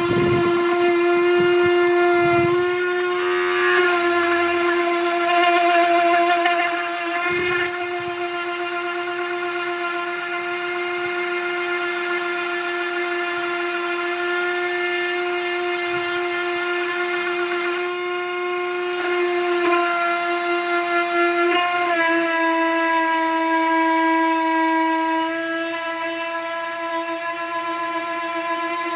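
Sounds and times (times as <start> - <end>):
electric sander whining: 0.0 - 28.9.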